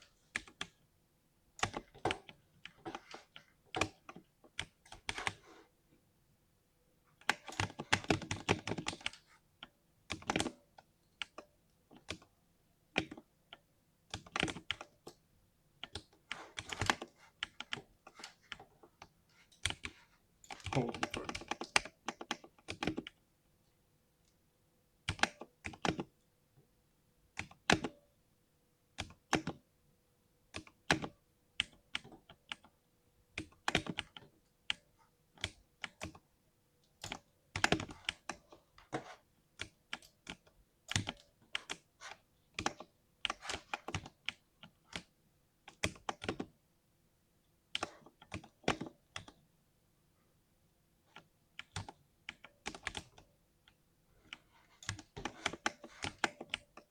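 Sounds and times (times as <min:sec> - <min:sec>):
mechanical keyboard typing: 0:07.2 - 0:09.2, 0:10.1 - 0:10.6, 0:14.1 - 0:14.9, 0:15.8 - 0:18.7, 0:19.5 - 0:23.2, 0:30.6 - 0:32.7, 0:33.4 - 0:36.2, 0:37.0 - 0:45.1, 0:45.7 - 0:46.5, 0:47.7 - 0:49.4, 0:51.1 - 0:53.3, 0:54.3 - 0:56.9.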